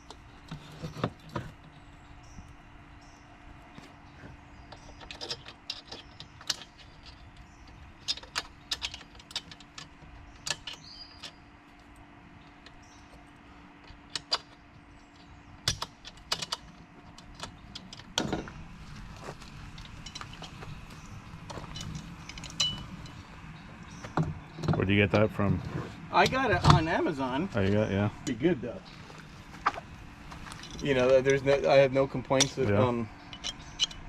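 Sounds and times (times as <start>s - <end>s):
parts clicking and clinking: 4.7s - 24.8s, 28.9s - 34.0s.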